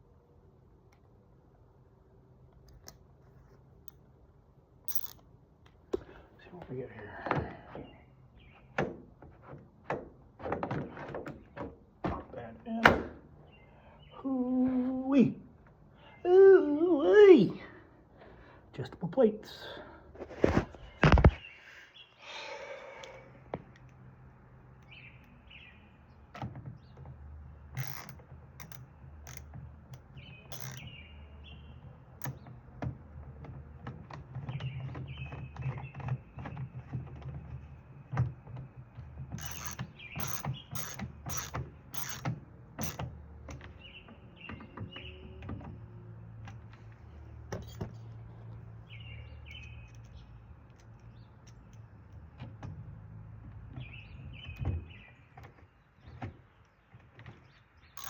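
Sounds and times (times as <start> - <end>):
metal lock parts clicking: 2.5 - 3.1, 4.9 - 5.8, 27.7 - 31.0, 39.3 - 43.8, 47.5 - 48.0, 49.4 - 52.4
bird chirps: 48.8 - 50.4.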